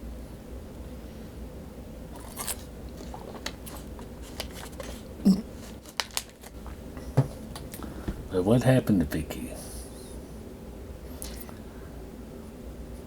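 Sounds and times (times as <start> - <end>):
mouth clicks and lip smacks: 11.2 - 11.6.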